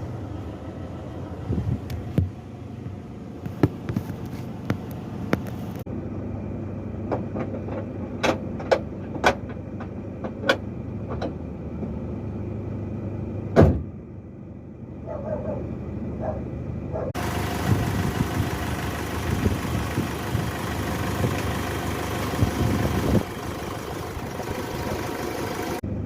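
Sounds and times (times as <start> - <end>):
thump: 13.6 - 13.9.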